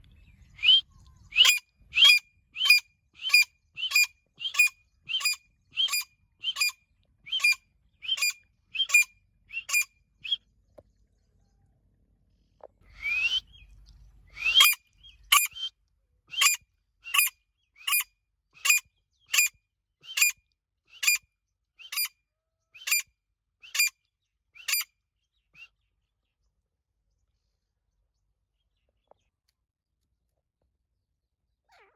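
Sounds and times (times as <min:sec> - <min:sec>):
bird calling sharp rising notes: 0:07.3 - 0:09.9.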